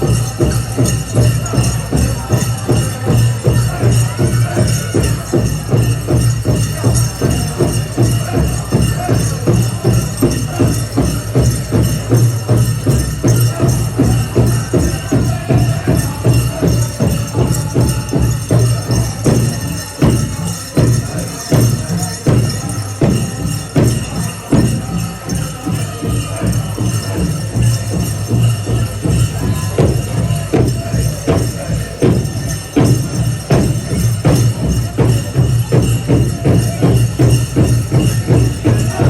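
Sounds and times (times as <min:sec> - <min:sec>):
large drum beating: 0:00.0 - 0:39.0
metal jingles shimmering: 0:00.0 - 0:39.0
people singing: 0:00.0 - 0:39.0.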